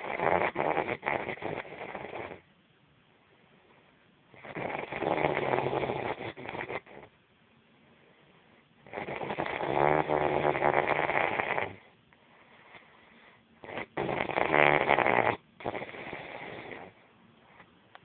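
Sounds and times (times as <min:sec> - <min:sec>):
loud snoring: 0:00.0 - 0:02.4, 0:04.4 - 0:07.1, 0:08.8 - 0:11.9, 0:13.6 - 0:17.0
quiet breath out: 0:11.9 - 0:13.6.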